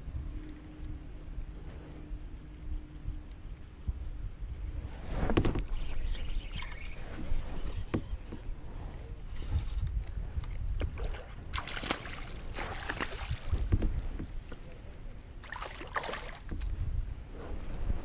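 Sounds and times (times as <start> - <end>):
wind rumbling on microphone: 0.0 - 18.0
water lapping against kayak: 5.3 - 14.6, 15.4 - 16.7.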